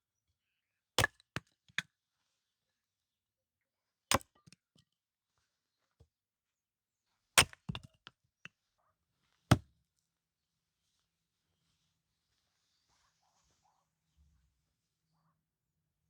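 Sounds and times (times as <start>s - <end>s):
hatchet chopping wood: 1.0s - 1.5s, 4.1s - 4.4s, 7.4s - 8.0s.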